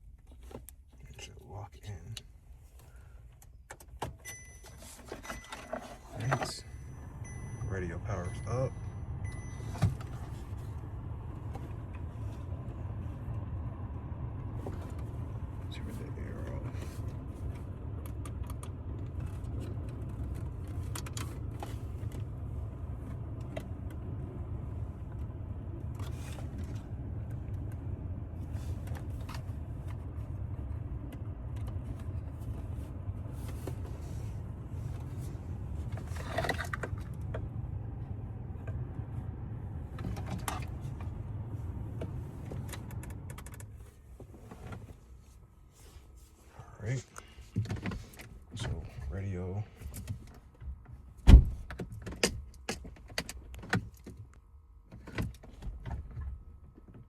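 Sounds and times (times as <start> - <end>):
car engine rumbling: 0.0 - 57.0
clicks and rattles of parts: 35.9 - 37.2.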